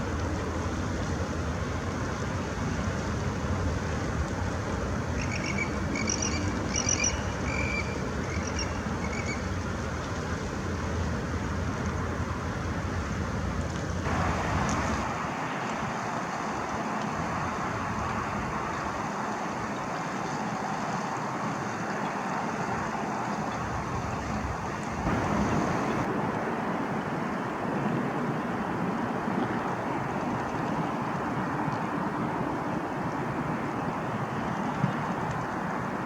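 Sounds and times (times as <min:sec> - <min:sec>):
low background rumble: 0:25.0 - 0:26.1
thin hissy noise: 0:25.0 - 0:26.2.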